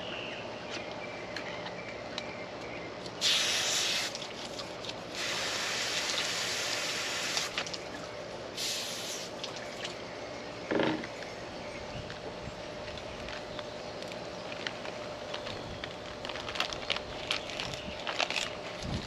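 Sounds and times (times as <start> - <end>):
water spraying from hose: 3.2 - 7.9, 8.5 - 9.8.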